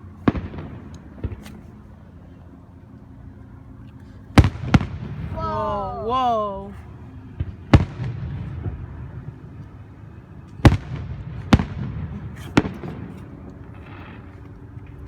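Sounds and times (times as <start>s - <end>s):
fireworks bangs: 10.6s - 13.2s.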